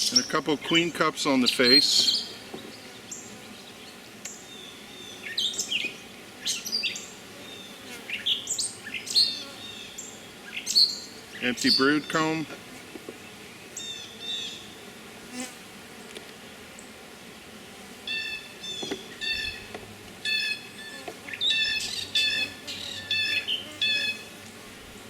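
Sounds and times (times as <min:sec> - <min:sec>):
bees humming: 0:00.0 - 0:25.0
bird harsh calls: 0:18.1 - 0:19.7, 0:20.3 - 0:24.3
bird chirps: 0:20.3 - 0:24.2.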